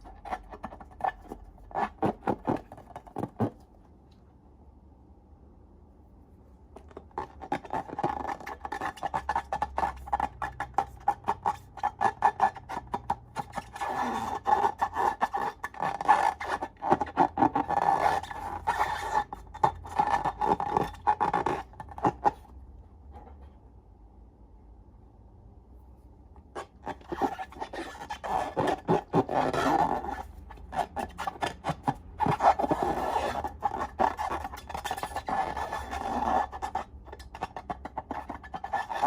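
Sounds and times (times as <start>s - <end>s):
steady squeaky tone: 7.1s - 22.5s, 26.4s - 39.0s.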